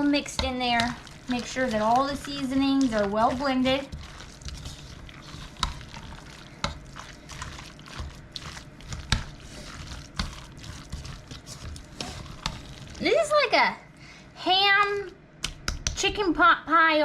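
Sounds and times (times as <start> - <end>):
spoon stirring thick soup: 0.0 - 13.0.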